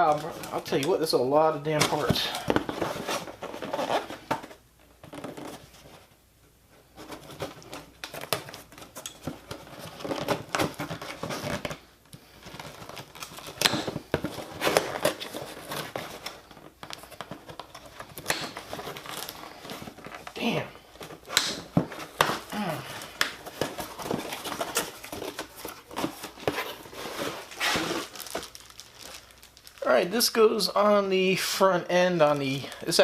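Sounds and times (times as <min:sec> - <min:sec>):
packaging crinkling and tearing: 0:07.0 - 0:30.6.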